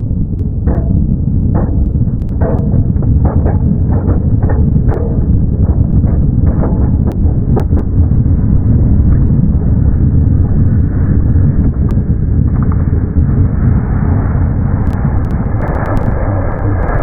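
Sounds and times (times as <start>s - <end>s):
sharp clicks: 1.6s - 2.7s, 14.8s - 17.0s.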